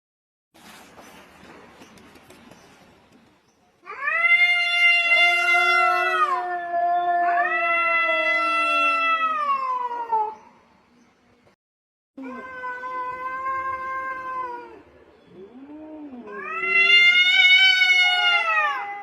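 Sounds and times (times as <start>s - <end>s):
cats yowling: 3.8s - 10.4s, 12.2s - 19.0s.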